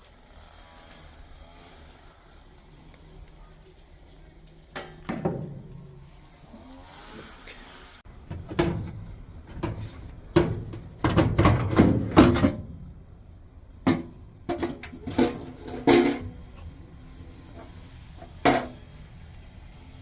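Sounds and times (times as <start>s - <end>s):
tools and hard parts clattering: 8.3s - 12.6s, 13.9s - 16.4s.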